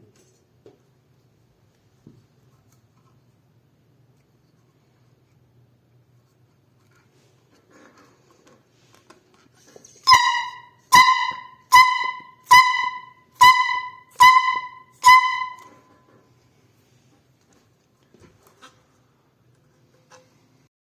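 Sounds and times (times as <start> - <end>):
homemade horn honks: 10.0 - 16.0.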